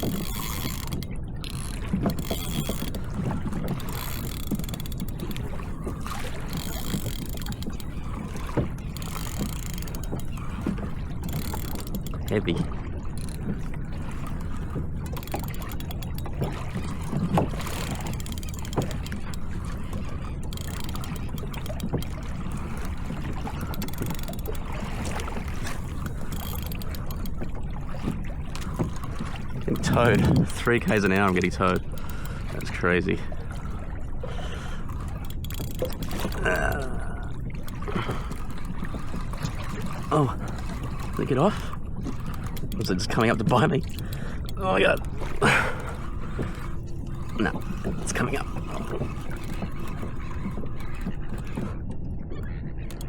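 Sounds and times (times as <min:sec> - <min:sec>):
small splashes: 0:00.0 - 0:53.0
water against kayak hull: 0:00.0 - 0:53.0
wind rumble on microphone: 0:27.5 - 0:31.8.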